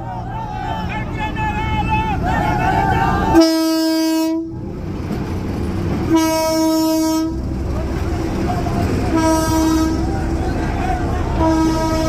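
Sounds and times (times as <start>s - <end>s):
train rumbling: 0.0s - 12.0s
train horn blast: 3.3s - 4.6s, 6.1s - 7.4s, 9.1s - 10.3s, 11.2s - 12.0s.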